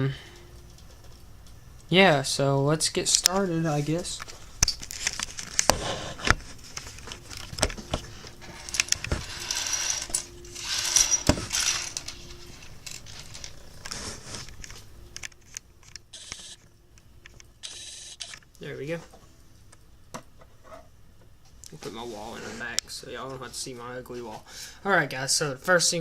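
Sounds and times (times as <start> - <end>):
rustling: 3.2 - 16.7.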